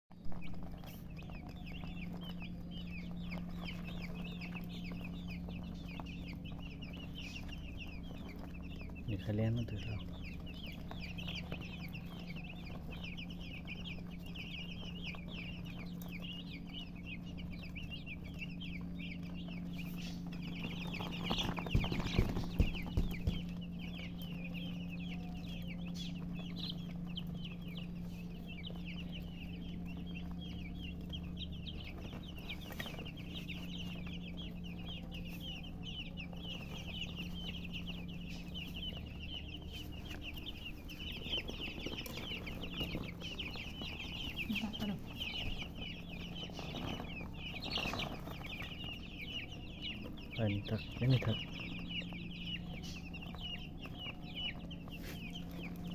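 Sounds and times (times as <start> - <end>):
baby chicks peeping: 0.1 - 55.9
low hum: 0.1 - 55.9
loud knocks: 21.3 - 23.6.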